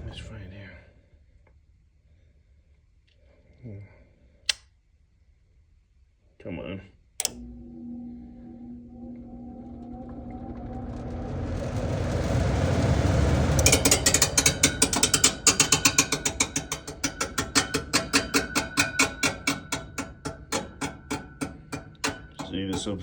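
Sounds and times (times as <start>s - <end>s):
furnace blower rushing air: 7.3s - 23.0s
blower wheel knocking and screeching: 7.4s - 23.0s.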